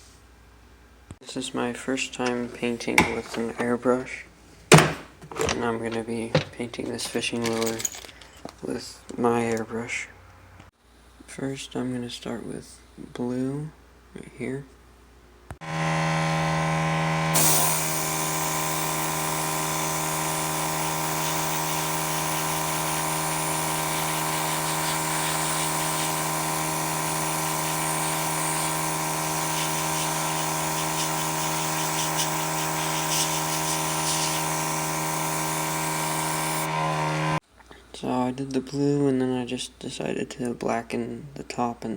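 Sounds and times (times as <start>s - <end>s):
small compressor humming: 15.6s - 37.4s
airbrush spraying hiss: 17.4s - 36.7s.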